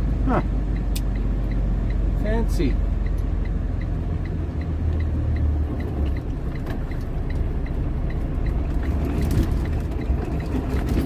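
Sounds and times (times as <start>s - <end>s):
light even ticking: 0.0s - 11.0s
truck engine droning: 0.0s - 11.0s.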